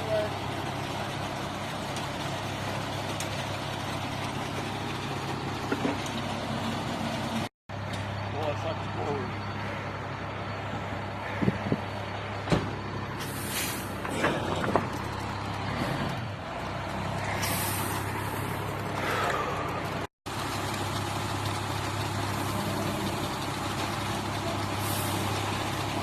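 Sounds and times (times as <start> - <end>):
truck engine humming: 0.0 - 26.0
air hissing: 13.2 - 14.0.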